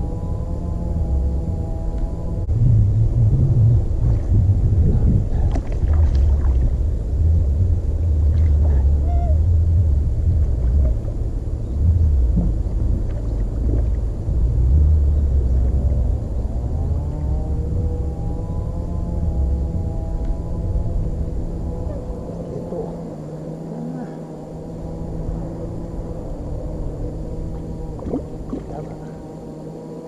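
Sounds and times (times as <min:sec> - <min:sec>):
boat motor rumble: 0:00.0 - 0:30.0
wind: 0:00.0 - 0:30.0.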